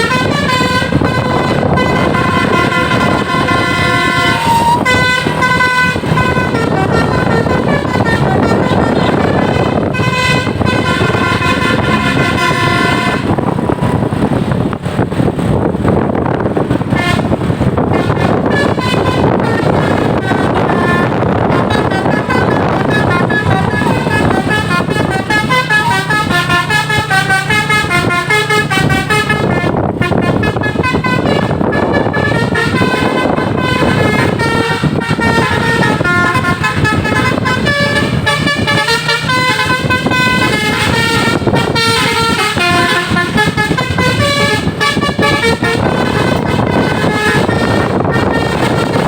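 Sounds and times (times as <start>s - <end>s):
multi-tone bus horn tune: 0.0s - 49.0s
road and engine rumble: 0.0s - 49.0s.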